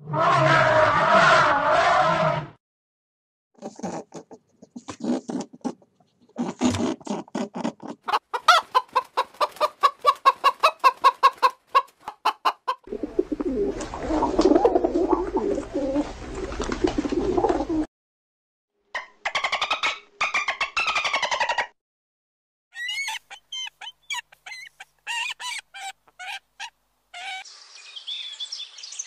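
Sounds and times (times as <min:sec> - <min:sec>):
chickens clucking: 0:08.1 - 0:17.9.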